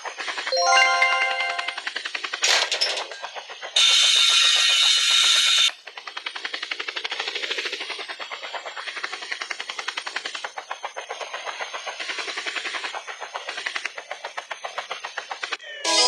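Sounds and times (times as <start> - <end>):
helicopter rotor chopping: 5.8 - 15.6.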